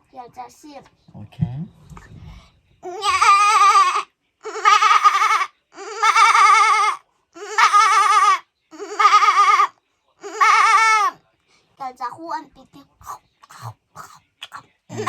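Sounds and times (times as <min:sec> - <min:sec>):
goat bleating: 0:02.9 - 0:11.2.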